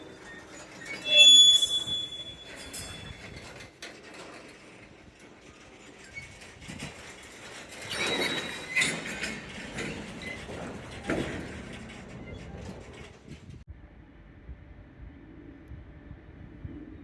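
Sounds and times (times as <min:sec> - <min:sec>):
high squeal: 0:00.0 - 0:03.6, 0:07.8 - 0:13.1
railway wagons clanking: 0:00.0 - 0:13.6.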